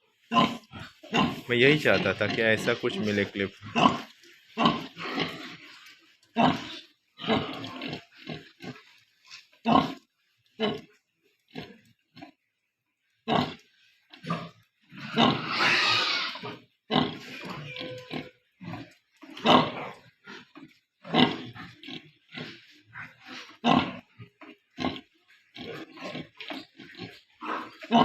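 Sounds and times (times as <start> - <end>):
pig squealing: 0.3 - 5.6, 6.4 - 8.1, 14.3 - 20.0, 25.6 - 28.0
pigs grunting: 0.3 - 8.8, 9.6 - 10.0, 10.6 - 10.9, 13.3 - 13.6, 14.2 - 28.0.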